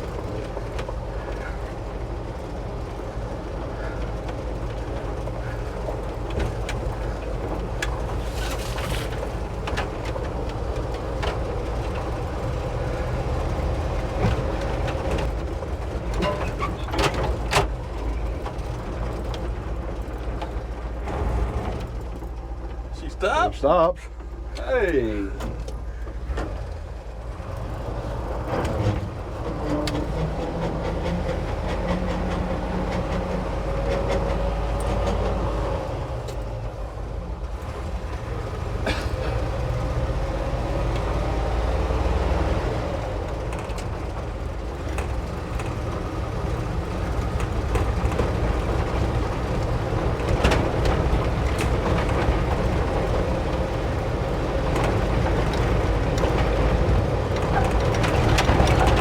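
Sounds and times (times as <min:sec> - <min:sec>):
truck engine and road drone: 0:00.0 - 0:59.0
body rattles and knocks: 0:03.6 - 0:23.4, 0:41.1 - 0:59.0.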